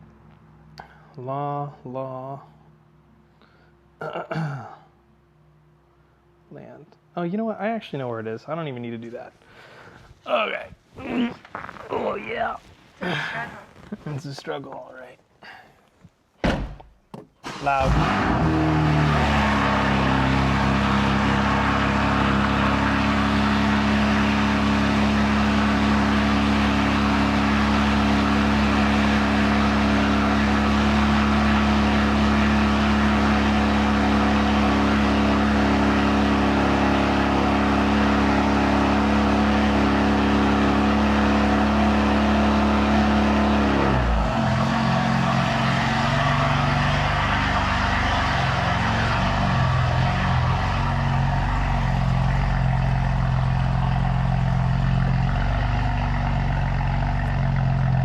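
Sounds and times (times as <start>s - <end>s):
car engine running: 17.7s - 58.0s.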